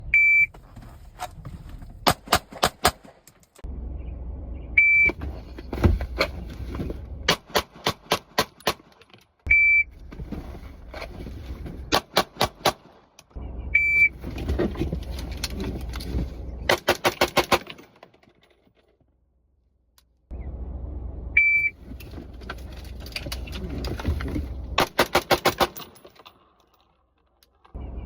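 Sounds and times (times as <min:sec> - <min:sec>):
electronic beep: 0:00.0 - 0:00.5, 0:04.8 - 0:05.2, 0:09.5 - 0:09.9, 0:13.4 - 0:14.2, 0:21.4 - 0:21.8
low rumble: 0:03.6 - 0:07.3, 0:13.3 - 0:16.7, 0:20.2 - 0:24.8.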